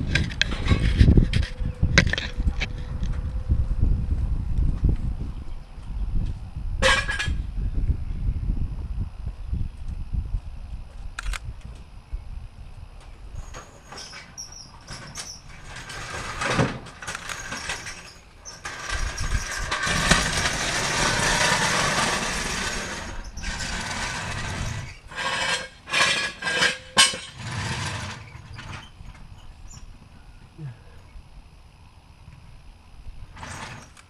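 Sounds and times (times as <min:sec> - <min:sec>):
metal scraping: 0:00.0 - 0:03.2, 0:06.8 - 0:07.4, 0:13.4 - 0:29.8, 0:33.4 - 0:34.0
metal knocks and clanks: 0:13.5 - 0:29.2.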